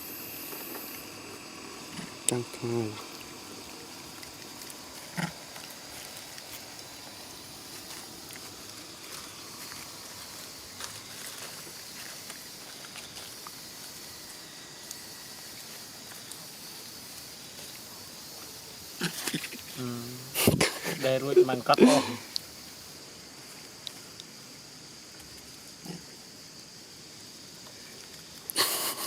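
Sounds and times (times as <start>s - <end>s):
high insect drone: 0.0s - 29.0s
outdoor background hiss: 0.0s - 29.0s
faint rustles and ticks: 1.9s - 14.0s.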